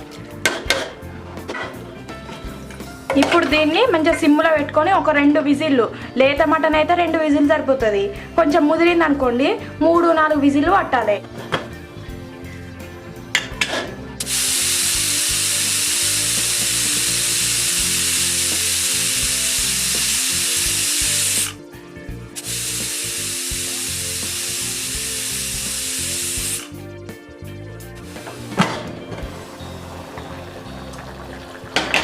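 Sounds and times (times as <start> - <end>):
pressure cooker whistle hissing: 14.2 - 21.6, 22.4 - 26.7.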